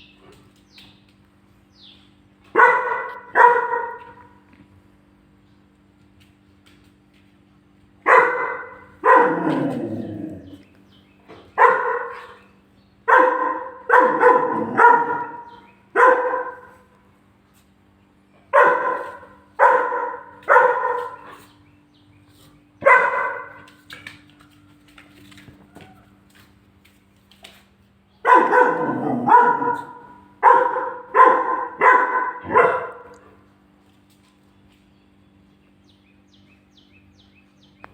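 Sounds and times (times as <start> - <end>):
puppy barking: 2.4 - 4.4, 8.0 - 10.6, 11.6 - 17.0, 18.5 - 21.5, 22.8 - 23.8, 28.2 - 33.4.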